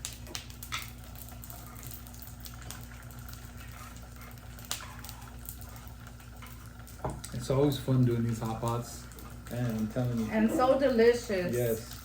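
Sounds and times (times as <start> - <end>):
broth simmering: 0.0 - 12.0
hot pot humming: 0.0 - 12.0.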